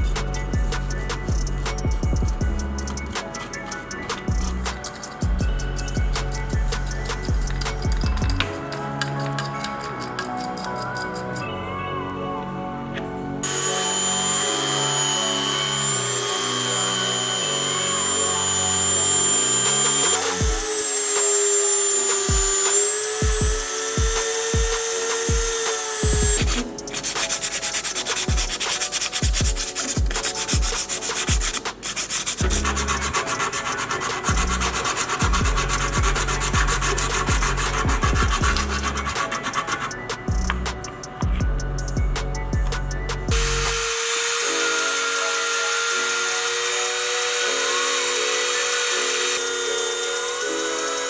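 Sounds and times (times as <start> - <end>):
rapid scraping strokes: 0.0 - 11.5, 23.8 - 41.2
background music: 0.0 - 51.0
sanding small parts: 2.8 - 11.4, 15.4 - 40.9, 42.8 - 50.7.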